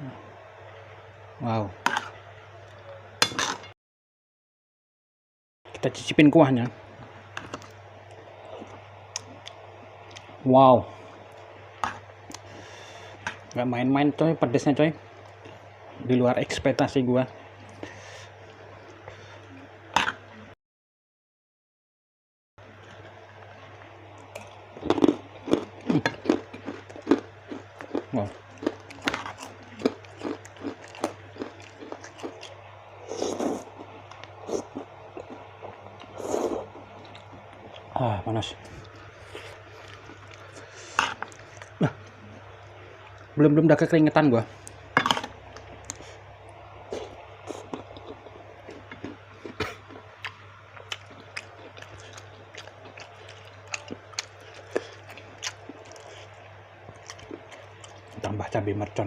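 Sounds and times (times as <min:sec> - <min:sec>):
chewing with wet mouth clicks: 0:24.2 - 0:32.6, 0:36.9 - 0:37.9, 0:46.9 - 0:58.3
loud noisy eating sounds: 0:24.2 - 0:59.0.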